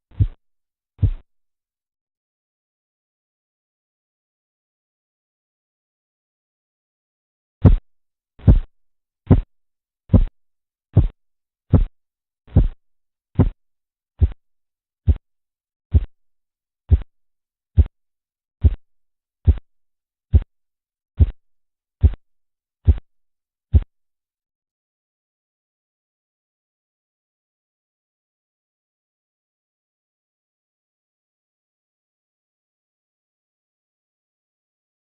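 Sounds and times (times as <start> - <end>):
low tapping pulse thumps: 0.2 - 0.4, 1.0 - 1.2, 7.6 - 7.8, 8.4 - 8.7, 9.3 - 9.5, 10.1 - 10.3, 11.0 - 11.9, 12.5 - 12.8, 13.4 - 13.6, 15.9 - 16.2.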